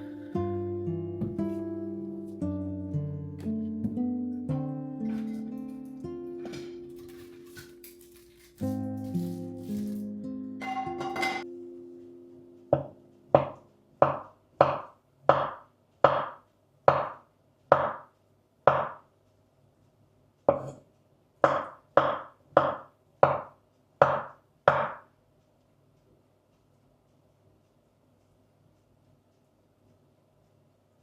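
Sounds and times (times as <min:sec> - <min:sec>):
knife chopping on cutting board: 0:12.8 - 0:18.0.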